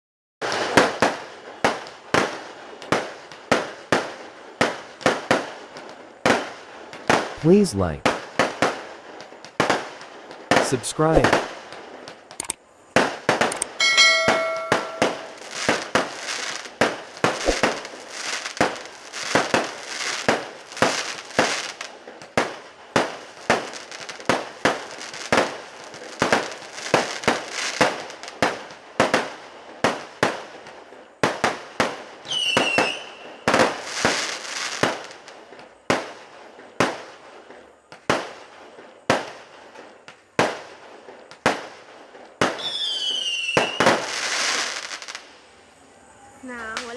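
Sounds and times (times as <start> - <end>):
fireworks banging: 0.4 - 41.8, 42.4 - 45.3, 46.4 - 46.9
firework whistle: 13.7 - 16.6, 32.2 - 34.2, 42.4 - 46.9.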